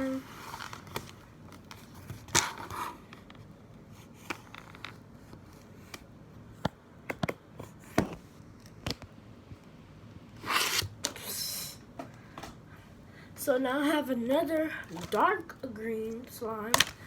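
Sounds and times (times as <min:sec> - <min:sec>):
plastic containers clicking: 0:16.2 - 0:17.0.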